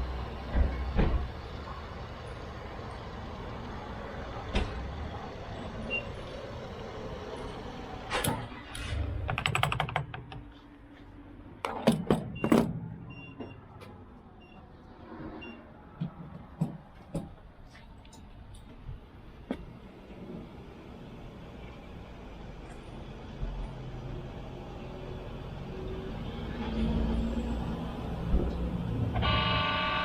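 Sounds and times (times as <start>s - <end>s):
truck engine running low: 0.0s - 9.4s
clicks and rattle: 8.1s - 10.5s
sharp knocks and clatter: 8.1s - 10.5s, 11.6s - 12.9s, 16.0s - 17.4s.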